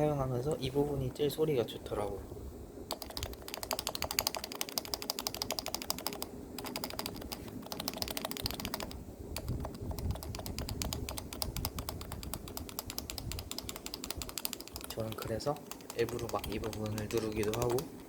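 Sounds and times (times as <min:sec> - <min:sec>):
keyboard typing: 0:02.9 - 0:18.0.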